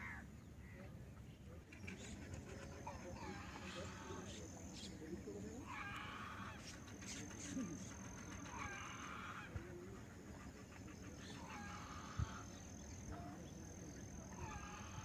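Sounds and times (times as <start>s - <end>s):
geese honking: 5.6s - 6.7s, 8.4s - 9.6s, 11.3s - 12.5s.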